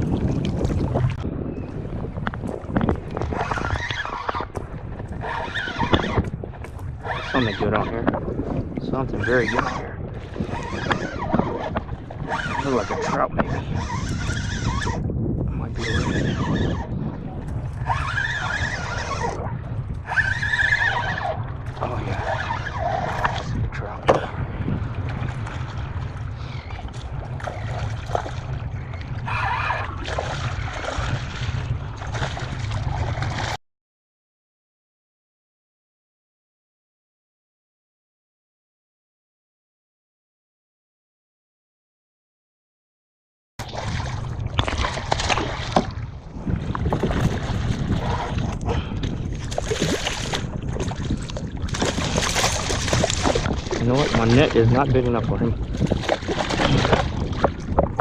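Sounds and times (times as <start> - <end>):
water splashing: 0.0 - 1.2, 15.8 - 33.6, 43.6 - 58.0
wind rumble on microphone: 0.0 - 33.6, 43.6 - 58.0.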